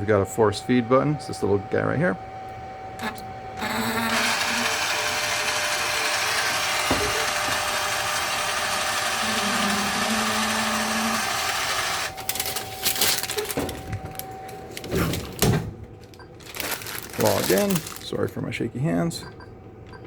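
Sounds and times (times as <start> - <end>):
printer paper-feed motor running: 3.0 - 14.9, 16.4 - 18.2
paper rustling: 12.2 - 15.4, 16.4 - 18.4.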